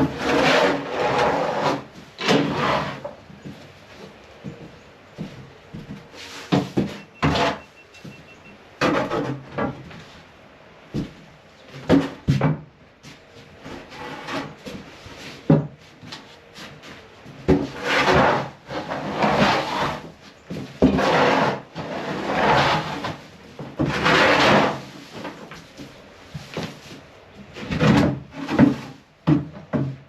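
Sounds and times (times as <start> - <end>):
boards scraping and dragging: 0.0 - 3.2, 6.2 - 8.2, 8.8 - 10.2, 13.5 - 16.8, 17.4 - 29.0.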